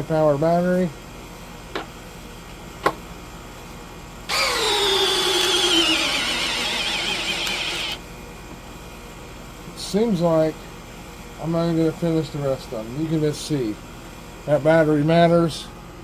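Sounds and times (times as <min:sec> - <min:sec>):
hammer drill whine: 0:04.3 - 0:08.0.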